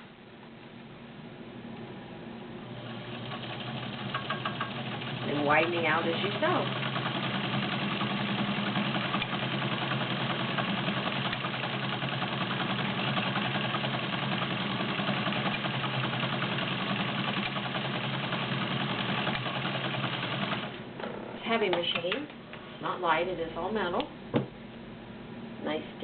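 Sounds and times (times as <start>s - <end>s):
sewing machine running: 2.7s - 20.8s.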